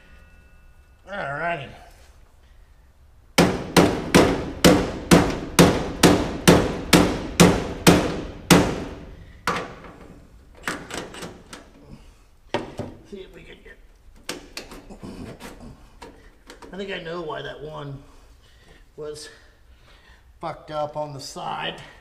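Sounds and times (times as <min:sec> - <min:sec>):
hammer striking metal: 0:03.4 - 0:09.8.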